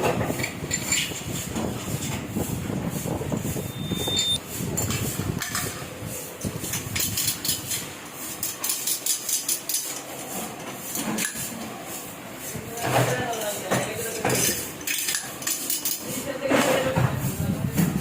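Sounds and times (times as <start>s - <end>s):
rapid clacking of machine parts: 12.8s - 16.1s.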